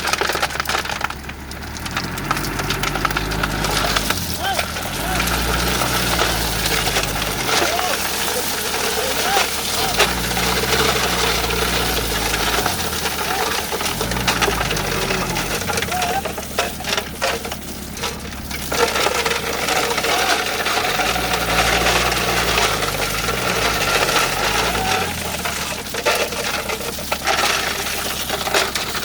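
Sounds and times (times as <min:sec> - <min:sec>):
diesel engine revving: 0:00.0 - 0:29.0
metallic clinks and rattles: 0:00.0 - 0:29.0.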